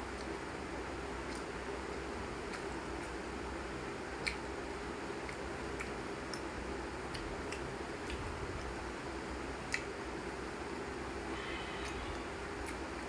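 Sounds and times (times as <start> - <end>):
background hiss and hum: 0.0 - 13.0
person chewing food: 2.3 - 3.2, 4.1 - 4.6, 5.2 - 8.9, 9.6 - 10.0, 11.3 - 13.0
mouth clicks: 4.2 - 4.5, 9.7 - 10.0.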